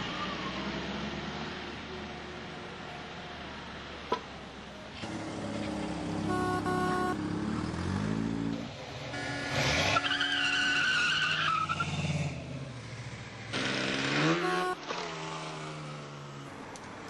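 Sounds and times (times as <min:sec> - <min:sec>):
engine revving: 0:05.0 - 0:10.1, 0:11.7 - 0:16.0
car horn honking: 0:06.2 - 0:07.2, 0:09.1 - 0:11.0, 0:14.2 - 0:14.9
tires squealing: 0:09.1 - 0:12.3.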